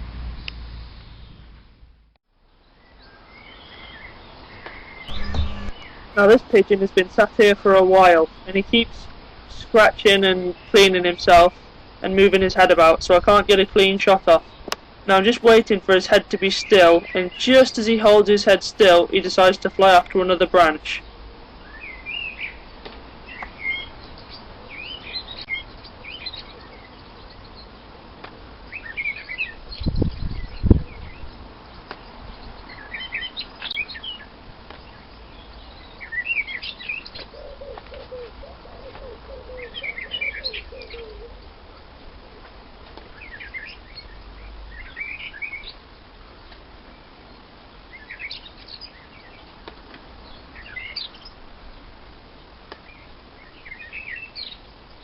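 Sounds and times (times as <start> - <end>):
small birds chirping: 2.6 - 28.0, 28.6 - 42.0, 42.9 - 55.0
low thumps: 5.1 - 5.8.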